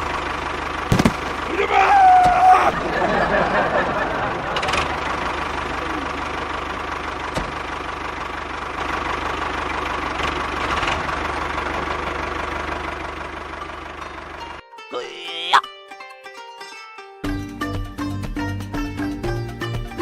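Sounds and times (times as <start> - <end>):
engine running steadily: 0.0 - 14.6.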